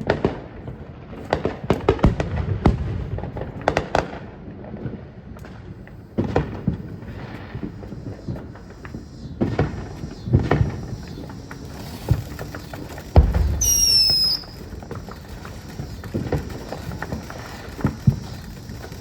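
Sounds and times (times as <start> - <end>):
fireworks bangs: 0.0 - 19.0
firework whistle: 6.2 - 19.0.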